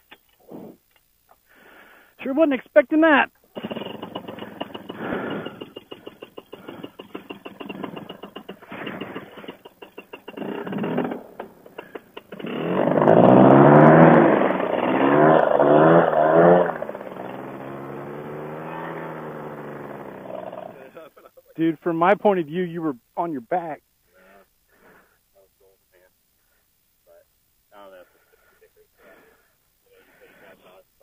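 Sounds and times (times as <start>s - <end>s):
knocking and clatter of gear: 3.6s - 12.5s
engine revving and idling: 3.6s - 20.8s.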